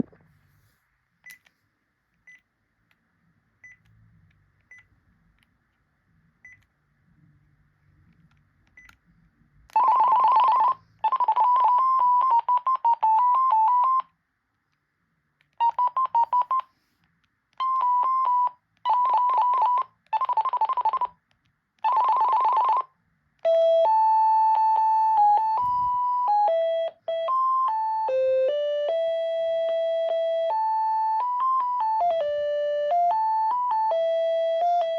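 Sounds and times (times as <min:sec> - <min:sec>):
melody ringtone: 0:09.8 - 0:14.0, 0:17.6 - 0:21.1, 0:21.9 - 0:22.9, 0:23.5 - 0:34.9
trilling electronic phone rings: 0:09.8 - 0:14.0.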